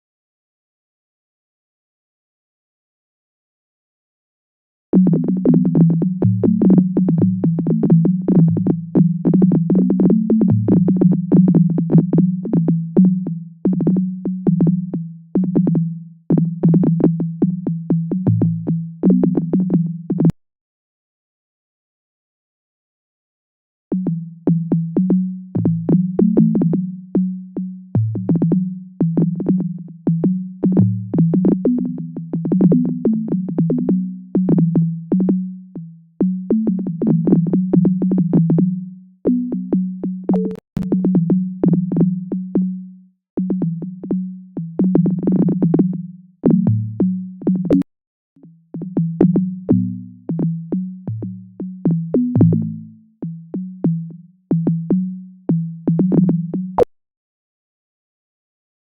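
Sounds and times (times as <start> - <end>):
synthesized short tones: 40.3 - 40.8.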